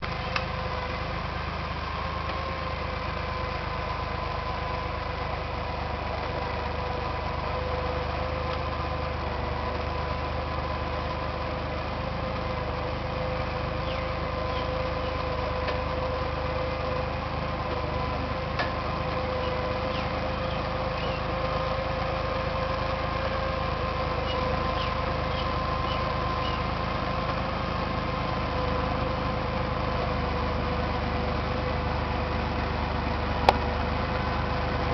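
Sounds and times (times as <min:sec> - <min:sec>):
bulldozer diesel engine running: 0:00.0 - 0:34.9.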